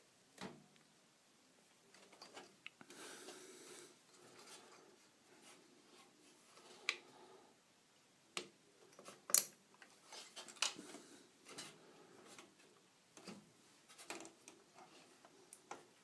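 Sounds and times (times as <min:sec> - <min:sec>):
faint handling rustle: 0:01.8 - 0:07.0, 0:09.8 - 0:16.0.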